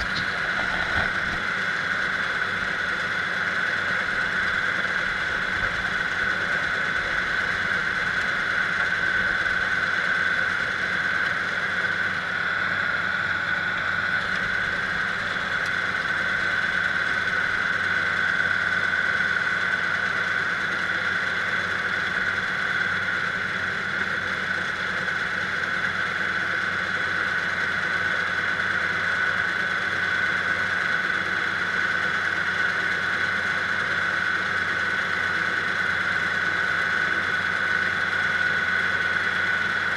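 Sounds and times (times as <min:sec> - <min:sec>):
high whine: 0:00.0 - 0:24.2
diesel engine running: 0:00.0 - 0:39.9.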